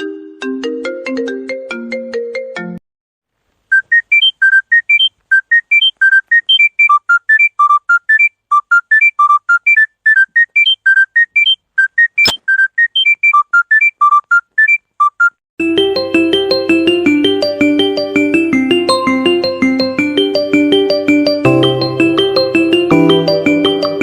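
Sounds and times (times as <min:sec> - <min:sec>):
sharp click: 0:12.2 - 0:13.2
ringtone low chiming chords: 0:15.7 - 0:24.0
ringtone high short notes melody: 0:18.8 - 0:24.0.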